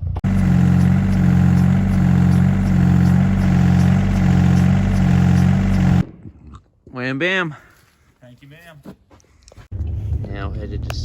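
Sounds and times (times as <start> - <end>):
vehicle engine pulsing: 0.0 - 6.1.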